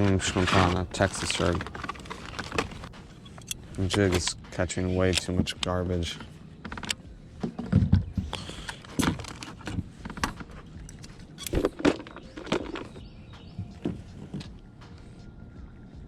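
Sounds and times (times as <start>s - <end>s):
fishing tackle clicks and rustles: 0.0s - 4.3s, 8.6s - 13.0s.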